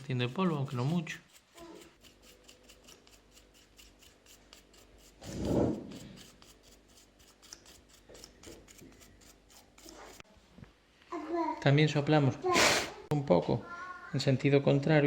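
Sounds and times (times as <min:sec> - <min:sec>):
paintbrush scratching fan: 0:00.0 - 0:10.3.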